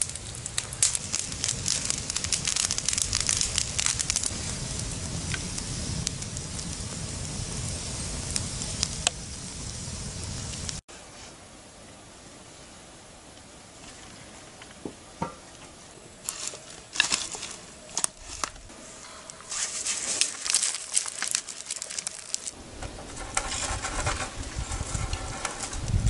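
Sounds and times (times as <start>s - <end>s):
rustling and crackling: 0.0s - 9.2s, 13.8s - 26.0s
low rumble: 0.0s - 10.8s.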